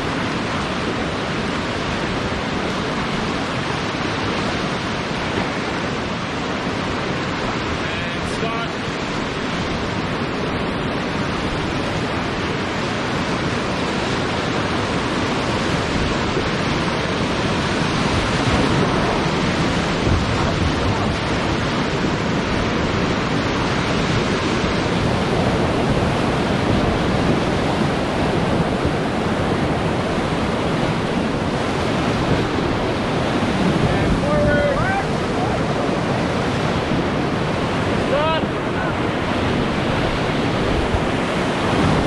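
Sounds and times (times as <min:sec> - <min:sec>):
whitewater rushing: 0:00.0 - 0:42.0.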